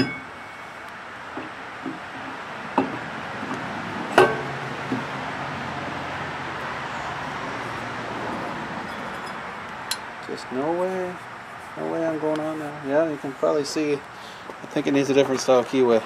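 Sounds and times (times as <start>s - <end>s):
metal clinks and knocks: 0.0s - 0.7s, 4.2s - 5.0s, 8.8s - 10.1s
ringing metal clank: 0.0s - 0.8s, 4.2s - 4.7s, 8.8s - 10.0s.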